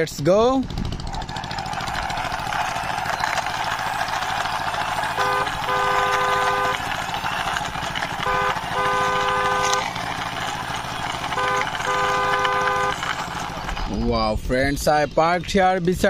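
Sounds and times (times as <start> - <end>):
steady engine drone: 0.0 - 16.0
vehicle horn blasts: 5.1 - 7.1, 8.1 - 10.0, 11.2 - 13.3.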